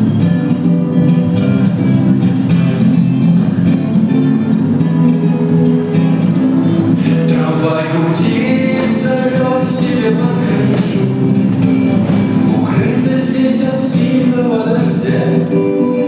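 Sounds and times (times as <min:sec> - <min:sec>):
guitar accompaniment: 0:00.0 - 0:16.0
person singing: 0:06.9 - 0:11.6, 0:12.3 - 0:16.0.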